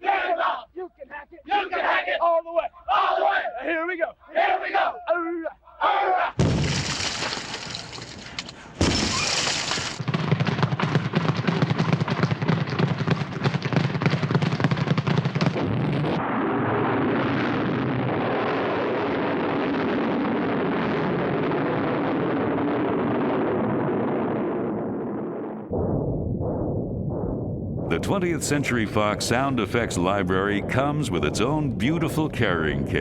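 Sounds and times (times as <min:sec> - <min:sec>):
explosion blasts: 0:06.4 - 0:10.4, 0:15.2 - 0:33.0
noisy din of battle: 0:06.4 - 0:33.0
rapid gunfire: 0:08.8 - 0:15.9.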